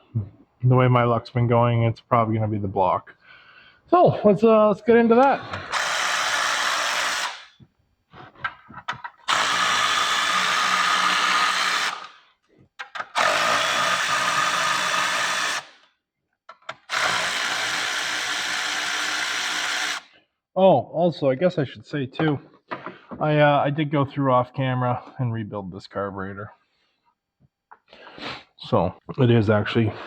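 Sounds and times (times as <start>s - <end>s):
power tool spinning: 5.2s - 7.6s, 9.1s - 12.2s, 12.8s - 15.8s, 16.6s - 20.1s.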